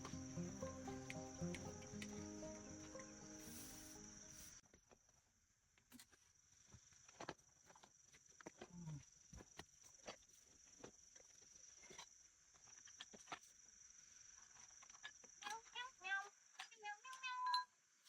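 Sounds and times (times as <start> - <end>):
high-pitched insect trill: 0.0 - 4.6.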